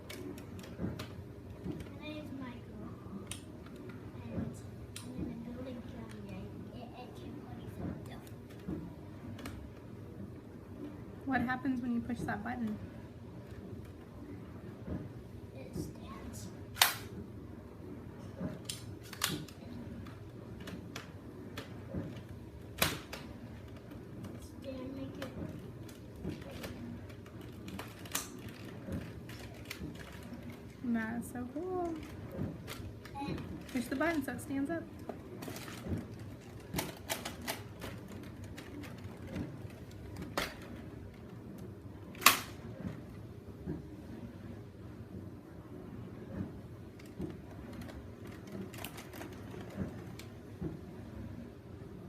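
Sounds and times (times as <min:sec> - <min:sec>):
plastic toy parts clicking: 0:25.9 - 0:30.5, 0:36.4 - 0:40.7.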